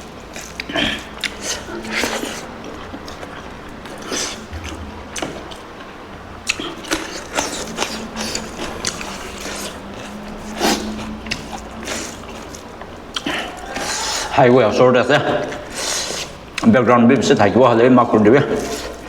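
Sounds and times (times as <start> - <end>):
crunching and wet chewing: 0.0 - 19.0.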